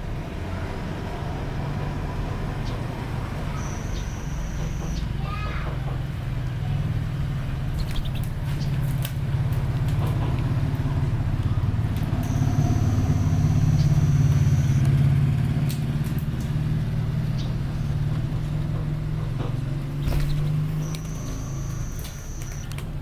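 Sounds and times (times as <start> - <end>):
motor engine humming: 1.4 - 5.2, 5.9 - 23.0
thin high whine: 3.5 - 5.1, 12.2 - 15.1, 20.0 - 22.8.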